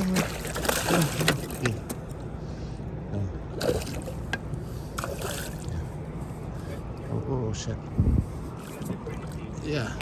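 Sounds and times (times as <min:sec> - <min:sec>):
boat motor running: 0:00.0 - 0:02.4.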